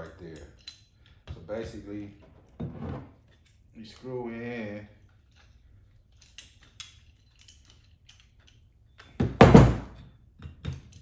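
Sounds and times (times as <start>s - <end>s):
loud metal thunk: 9.2s - 10.0s.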